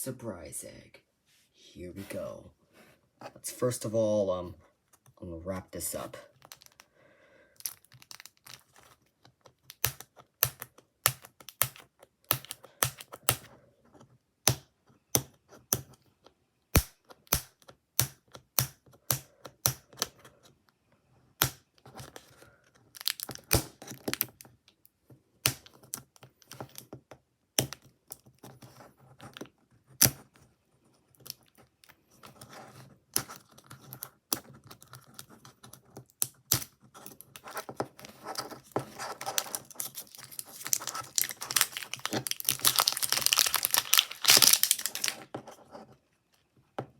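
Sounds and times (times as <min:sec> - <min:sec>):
wrapper crinkling: 0:06.4 - 0:06.8, 0:07.6 - 0:09.0, 0:23.0 - 0:23.5, 0:38.9 - 0:45.3.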